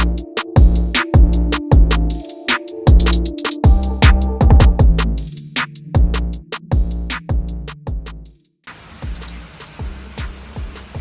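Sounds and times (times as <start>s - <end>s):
ticking hi-hats: 0.0s - 11.0s
deep bass drum hits: 3.7s - 5.2s.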